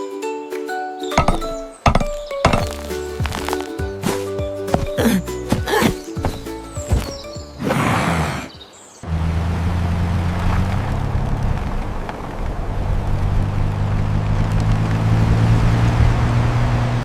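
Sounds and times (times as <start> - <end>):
vehicle engine humming: 9.0 - 17.0.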